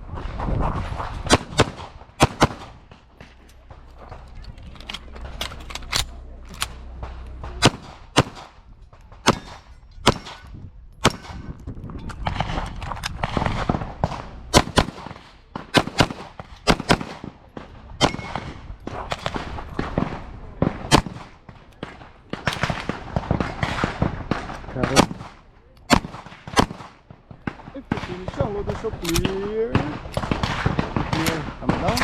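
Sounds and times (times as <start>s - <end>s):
pistol shots: 1.2s - 4.3s, 4.9s - 8.6s, 9.2s - 11.5s, 12.2s - 32.0s.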